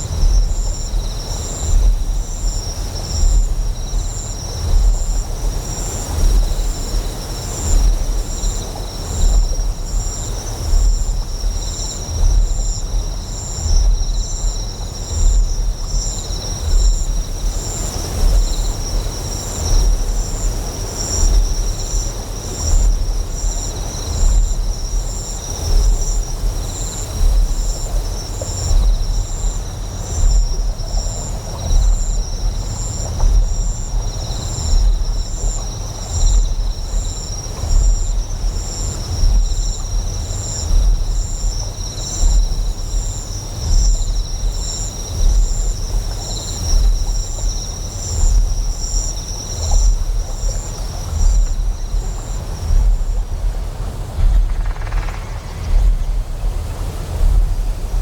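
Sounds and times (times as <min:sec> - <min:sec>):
faint flowing water: 0:00.0 - 0:58.0
insects chirping: 0:00.0 - 0:58.0.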